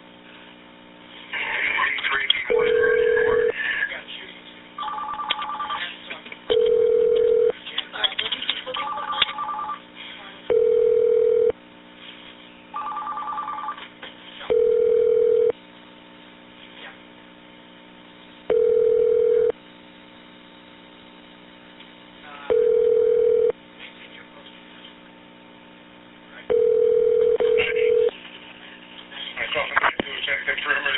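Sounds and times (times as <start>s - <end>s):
steady telephone tone: 2.5s - 3.6s, 4.8s - 5.8s, 6.5s - 7.5s, 8.8s - 9.8s, 10.5s - 11.6s, 12.8s - 13.8s, 14.5s - 15.6s, 18.5s - 19.6s, 22.5s - 23.6s, 26.5s - 28.1s.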